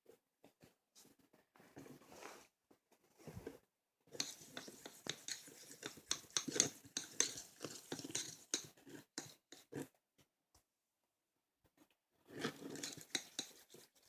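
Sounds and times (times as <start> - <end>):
slime stirred in a bowl: 3.3 - 9.9, 12.2 - 14.0.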